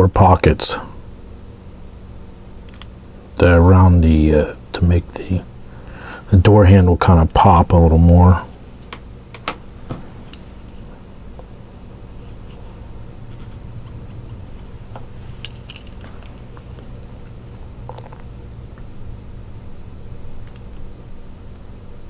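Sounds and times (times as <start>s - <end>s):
faint steady hum: 0.0s - 22.0s
marker tip scratching: 12.3s - 14.4s.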